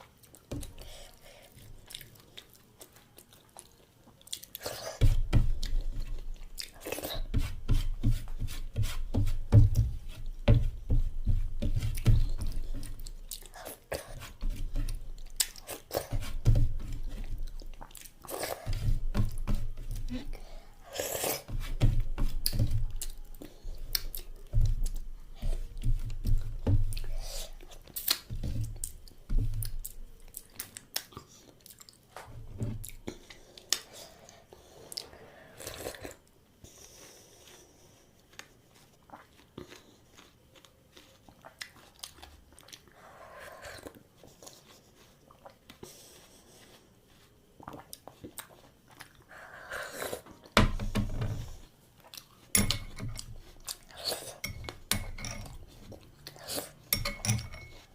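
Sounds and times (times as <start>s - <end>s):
person chewing food: 0.0s - 57.9s.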